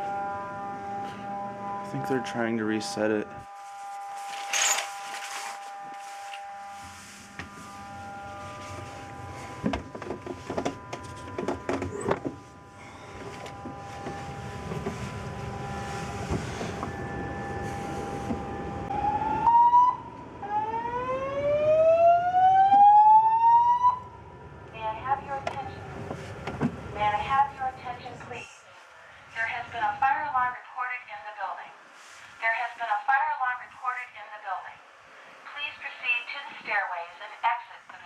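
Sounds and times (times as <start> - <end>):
slow-whoop alarm tone: 0.0 - 2.4, 5.1 - 24.7
steady electronic alarm tone: 0.0 - 25.9.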